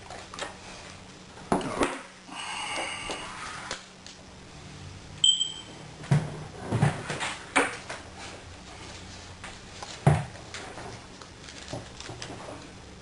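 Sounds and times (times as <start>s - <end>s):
short high beep: 5.2s - 5.8s.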